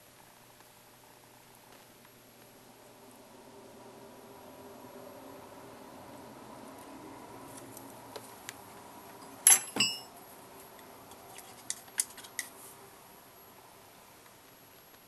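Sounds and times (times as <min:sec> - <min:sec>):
metal tools clattering: 0:09.2 - 0:10.1
metal tools clinking on bench: 0:09.2 - 0:10.1.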